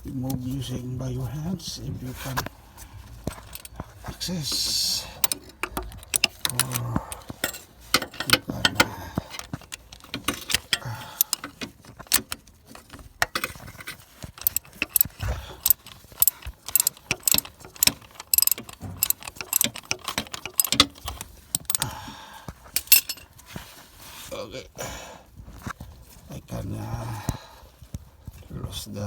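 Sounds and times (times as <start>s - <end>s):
metal clinks: 3.2s - 21.9s, 22.8s - 23.3s
ratchet wrench clicking: 3.3s - 3.7s, 5.2s - 6.8s, 7.4s - 12.4s, 14.4s - 21.9s, 22.8s - 23.2s.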